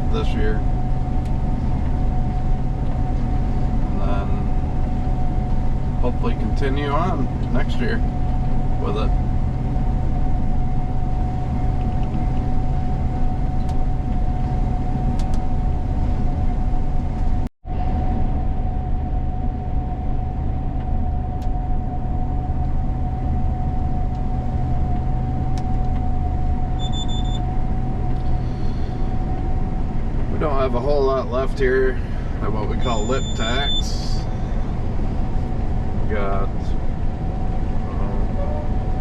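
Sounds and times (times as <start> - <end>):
combine harvester running: 0.0 - 39.0
short high beep: 26.8 - 27.4, 32.8 - 34.5.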